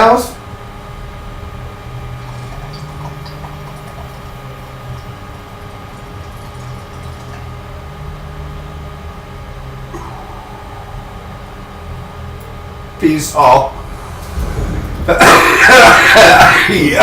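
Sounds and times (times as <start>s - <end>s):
electrical hum: 0.0s - 17.0s
water pipe bubbling: 1.7s - 8.0s.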